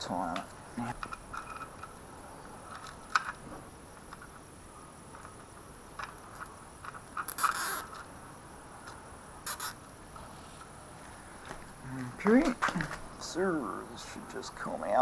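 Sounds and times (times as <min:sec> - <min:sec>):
cable tie ratcheting zip: 0:07.2 - 0:08.0, 0:09.5 - 0:09.8.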